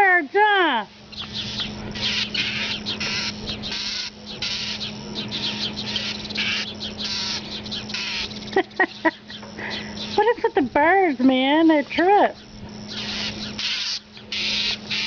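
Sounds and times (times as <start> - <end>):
faint low hum: 0.0 - 15.0
bird harsh scolding calls: 1.0 - 10.4, 11.0 - 15.0.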